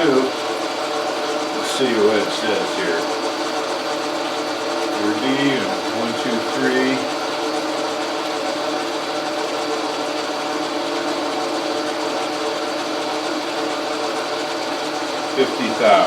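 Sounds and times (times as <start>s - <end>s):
metal lathe running: 0.0s - 16.0s.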